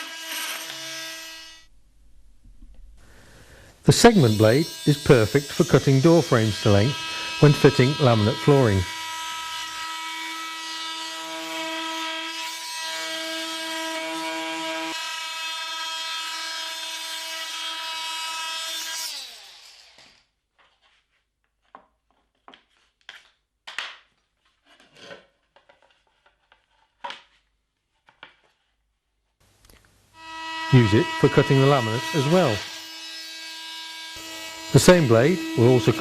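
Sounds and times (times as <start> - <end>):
multi-tool saw buzzing through wood: 0.0 - 1.7, 3.9 - 20.3, 30.2 - 36.0.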